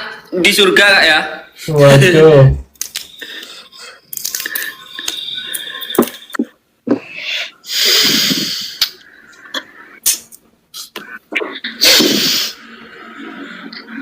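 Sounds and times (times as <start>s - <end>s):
heavy noisy breathing: 6.9s - 10.0s, 11.7s - 14.0s.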